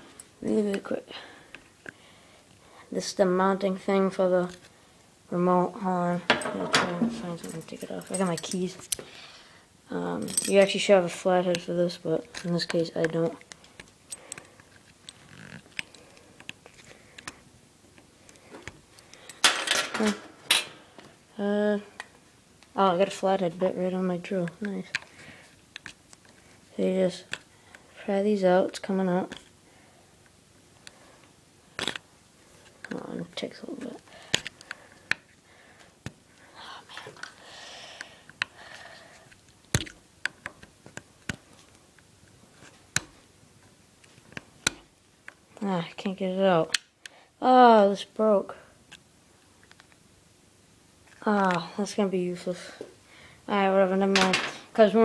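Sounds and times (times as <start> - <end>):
keys clicking and scraping: 6.2 - 9.0, 10.2 - 10.8.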